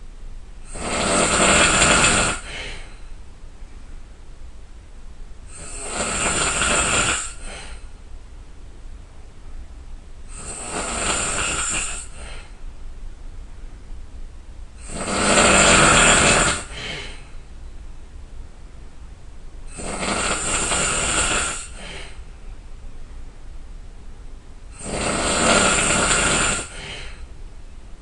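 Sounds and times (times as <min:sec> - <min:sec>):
person snoring loudly: 0:00.6 - 0:03.0, 0:05.5 - 0:07.8, 0:10.3 - 0:12.5, 0:14.8 - 0:17.2, 0:19.7 - 0:22.2, 0:24.7 - 0:27.2
quiet breathing: 0:00.6 - 0:03.9, 0:05.4 - 0:08.1, 0:10.2 - 0:12.8, 0:14.7 - 0:17.6, 0:19.7 - 0:22.6, 0:24.7 - 0:27.4.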